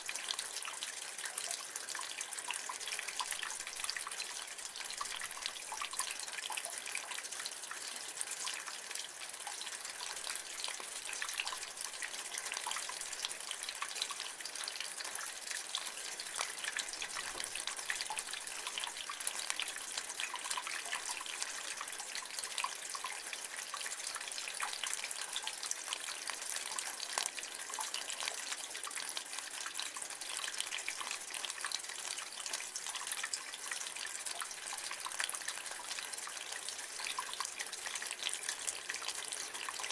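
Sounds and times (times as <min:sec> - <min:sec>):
rainwater dripping from gutter: 0:00.0 - 0:39.9.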